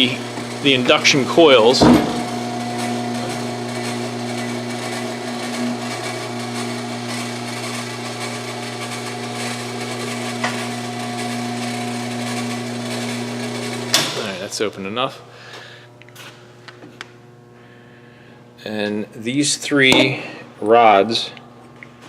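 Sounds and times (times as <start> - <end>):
electric motor humming: 0.0 - 14.8.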